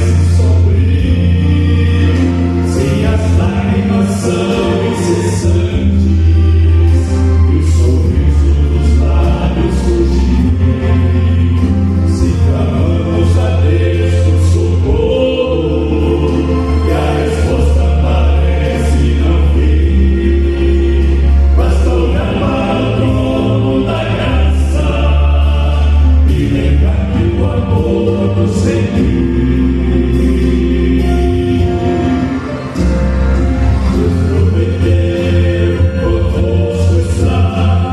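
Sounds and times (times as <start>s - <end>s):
vocal quartet singing a hymn: 0.0s - 37.9s.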